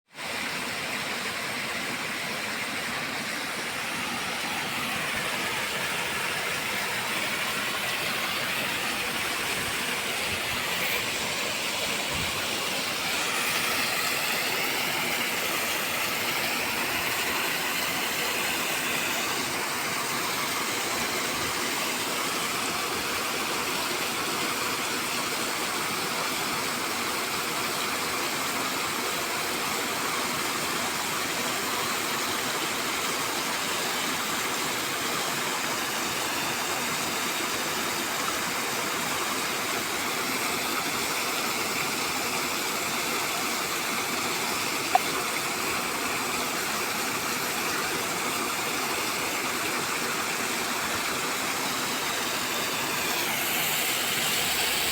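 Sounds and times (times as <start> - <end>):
sea surf on a beach: 39.4 - 54.9.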